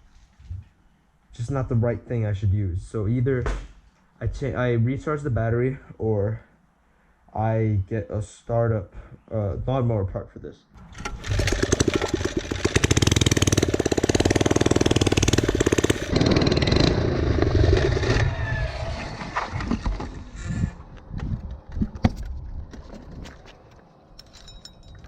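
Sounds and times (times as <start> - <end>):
clicks and knocks: 10.8 - 13.4
motor running with fast beat: 10.9 - 16.2.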